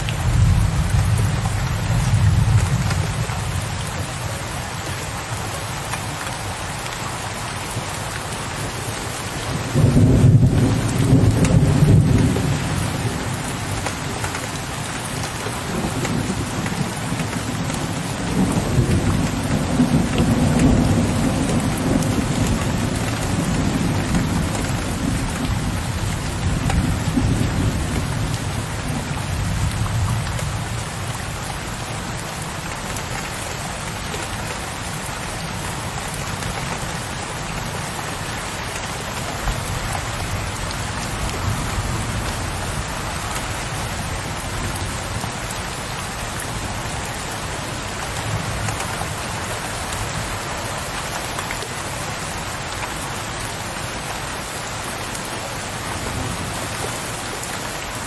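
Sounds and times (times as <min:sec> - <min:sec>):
steady rain: 0:00.0 - 0:58.0
low rolling thunder: 0:09.6 - 0:13.6.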